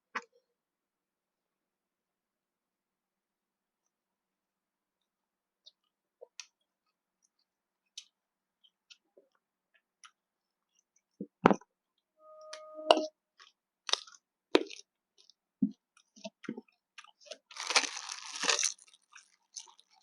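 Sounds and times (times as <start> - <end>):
short steady tone: 12.2 - 13.1.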